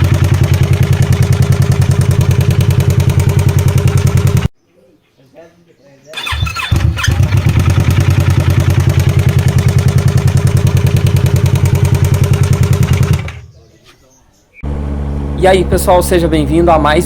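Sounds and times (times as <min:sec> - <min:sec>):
motorcycle engine knocking: 0:00.0 - 0:04.5, 0:07.0 - 0:13.4.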